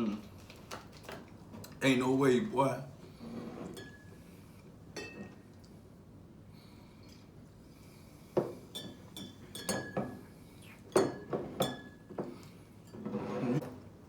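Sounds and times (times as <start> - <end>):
glass bottles clinking: 11.0 - 12.2.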